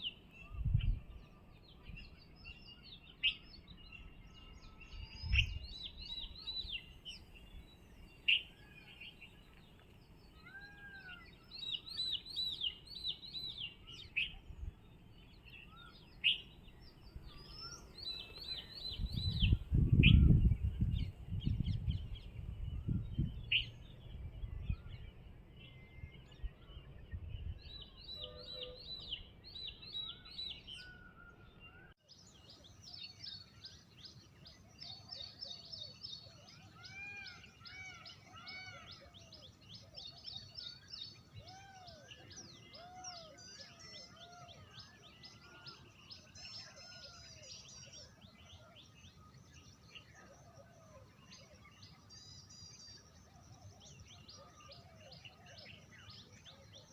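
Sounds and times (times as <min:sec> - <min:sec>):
wild birds chirping: 0:00.0 - 0:56.9
wind rumble on microphone: 0:00.4 - 0:02.2, 0:03.8 - 0:08.2, 0:16.6 - 0:30.2.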